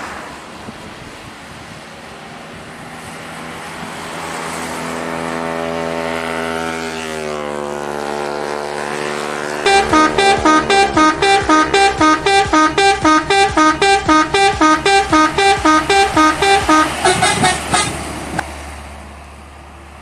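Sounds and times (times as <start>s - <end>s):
multi-tone musical horn: 9.6s - 18.4s.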